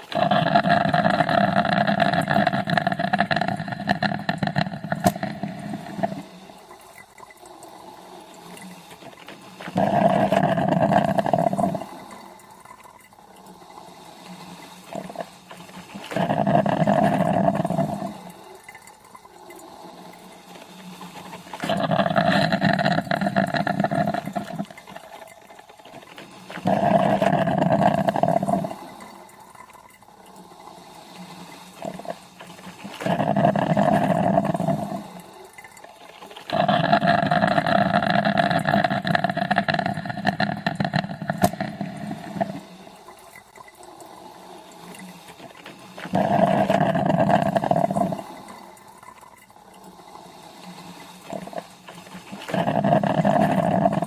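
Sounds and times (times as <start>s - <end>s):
coffee maker gurgling and hissing: 0.0s - 54.0s.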